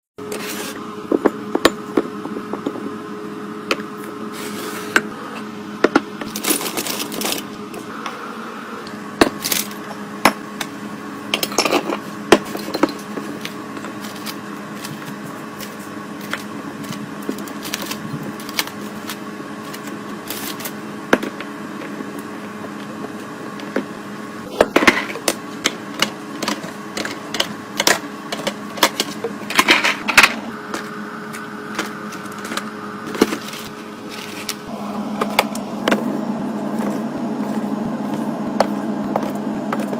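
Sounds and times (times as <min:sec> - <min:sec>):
steady hum: 0:00.2 - 0:39.9
packaging rustling: 0:06.3 - 0:07.5.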